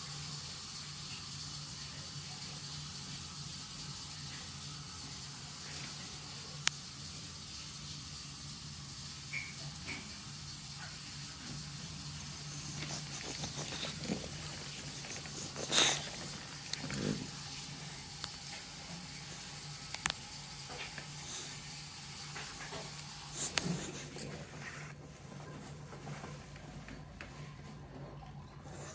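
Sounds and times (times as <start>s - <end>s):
pet snoring softly: 12.4s - 17.6s.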